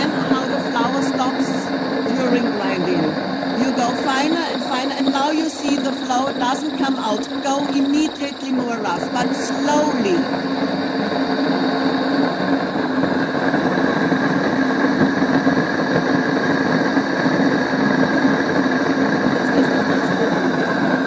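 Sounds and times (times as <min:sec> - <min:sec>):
grain mill motor hum: 0:00.0 - 0:21.0.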